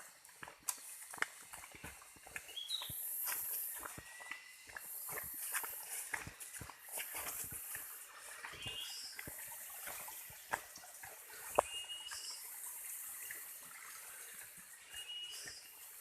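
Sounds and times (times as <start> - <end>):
steady high hiss: 0.0 - 10.4
footsteps on forest trail: 0.0 - 16.0.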